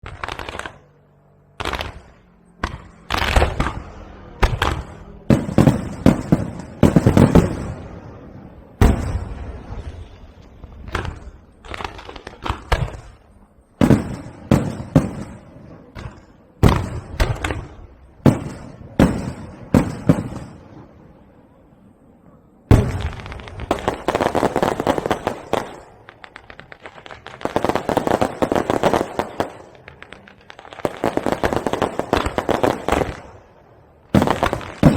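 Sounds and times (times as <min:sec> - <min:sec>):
rapid crackling pops: 0:22.7 - 0:33.4
firework shells bursting: 0:34.2 - 0:34.9.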